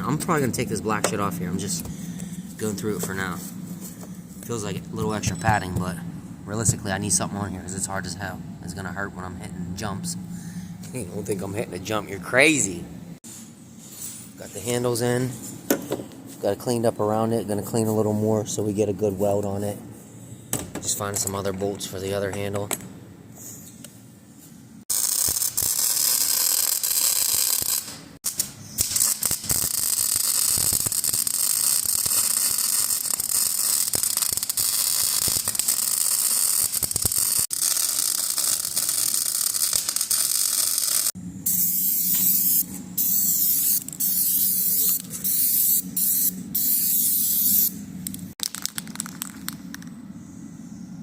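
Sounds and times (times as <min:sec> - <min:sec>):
low welder hum: 0:00.0 - 0:51.0
welding arc crackling: 0:24.9 - 0:47.7.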